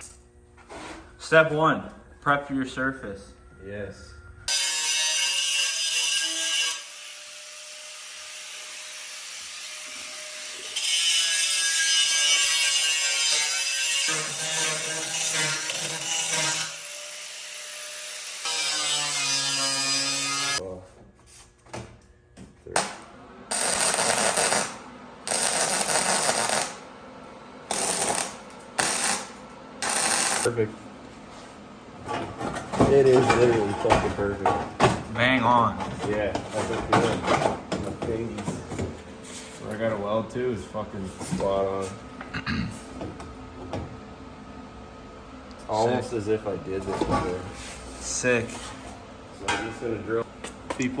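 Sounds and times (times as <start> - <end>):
power tool grinding steel: 4.5 - 20.6, 27.7 - 30.5
welder crackling: 23.5 - 26.8, 27.7 - 30.5.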